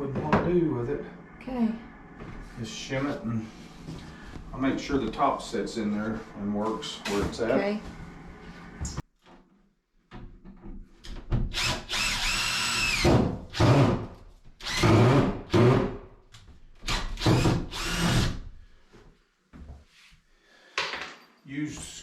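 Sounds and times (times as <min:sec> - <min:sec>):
power drill driving screws: 0:11.5 - 0:14.0, 0:14.6 - 0:15.9, 0:16.8 - 0:18.4.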